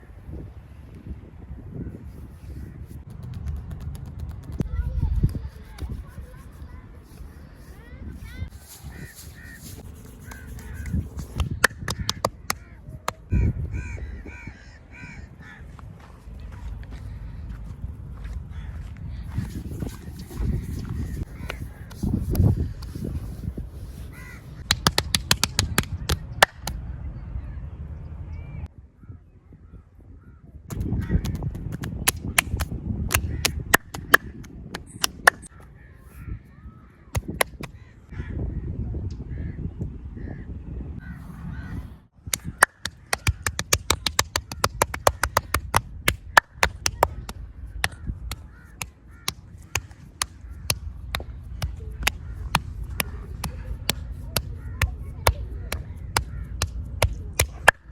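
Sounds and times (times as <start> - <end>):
hands rubbing and kneading back: 2.1 - 13.3, 19.3 - 26.8, 30.7 - 35.5, 42.3 - 57.9
sharp cracks: 9.4 - 13.3, 24.6 - 26.8, 30.7 - 35.5, 42.3 - 57.9
crows cawing: 12.0 - 15.8, 18.5 - 18.9, 24.1 - 24.6, 46.5 - 56.7
sharp smacks: 24.6 - 26.8, 30.7 - 35.5, 37.2 - 37.8, 42.3 - 57.9.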